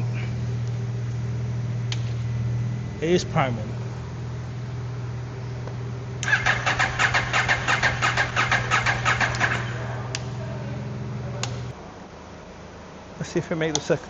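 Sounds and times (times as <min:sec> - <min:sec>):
fuel pump hum: 0:00.0 - 0:11.8
motorcycle engine cranking: 0:06.2 - 0:10.2
sharp ticks: 0:06.2 - 0:10.3.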